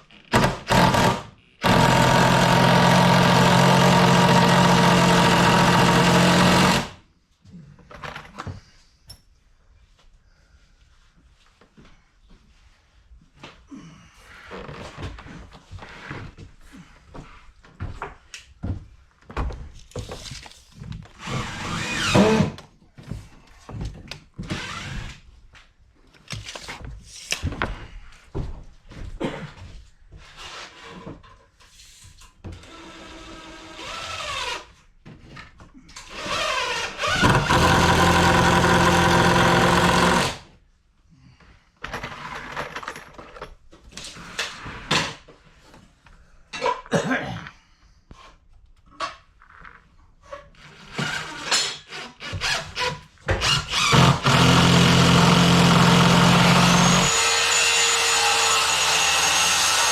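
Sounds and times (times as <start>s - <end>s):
power drill whirring: 0.3s - 7.0s, 21.2s - 22.5s, 24.5s - 25.2s, 32.6s - 34.7s, 36.1s - 40.5s, 50.9s - 59.9s
tools and lumber knocking: 0.3s - 7.0s, 36.1s - 40.4s, 50.9s - 59.9s.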